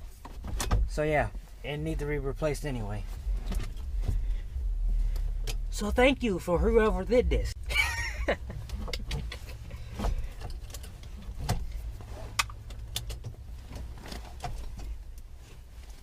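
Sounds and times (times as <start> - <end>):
steady low rumble: 0.0 - 16.0
light clicks and knocks of parts: 8.4 - 16.0.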